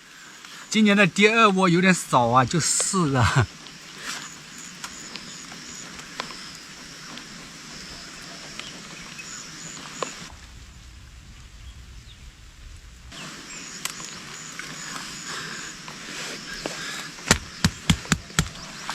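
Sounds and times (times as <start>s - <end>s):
steady outdoor hiss: 0.0s - 18.9s
low rumble: 10.3s - 13.1s.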